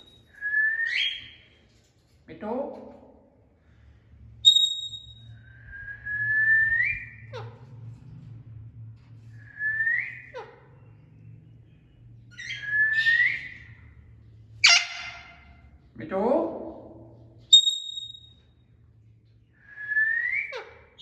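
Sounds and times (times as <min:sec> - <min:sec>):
parrot chirp: 0:00.0 - 0:01.6, 0:04.4 - 0:05.5, 0:06.5 - 0:07.7, 0:10.0 - 0:14.0, 0:14.6 - 0:15.7, 0:17.4 - 0:18.5, 0:20.1 - 0:21.0
parrot whistling: 0:00.4 - 0:01.4, 0:12.3 - 0:13.8, 0:14.6 - 0:15.3.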